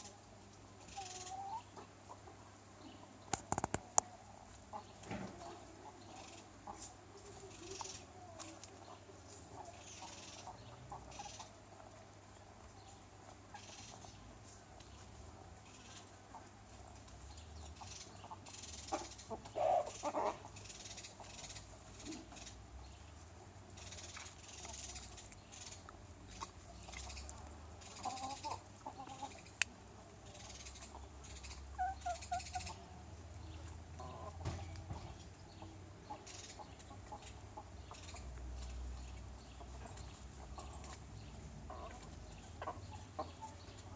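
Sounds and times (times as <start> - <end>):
chickens clucking softly: 0.0 - 43.9
chickens purring trills: 5.4 - 8.8.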